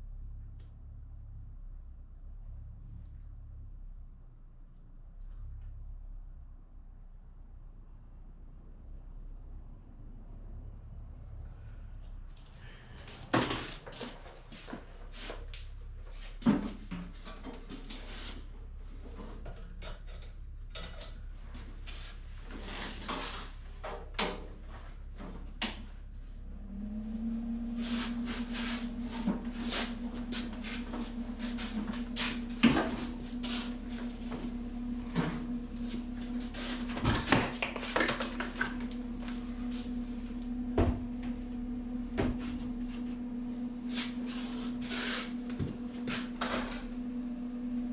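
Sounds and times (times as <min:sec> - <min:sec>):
steady low hum: 0:10.2 - 0:47.9.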